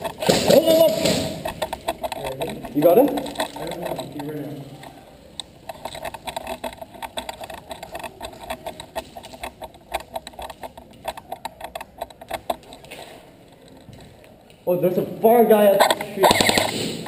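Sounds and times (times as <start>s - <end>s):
airsoft guns firing: 0.0s - 1.9s.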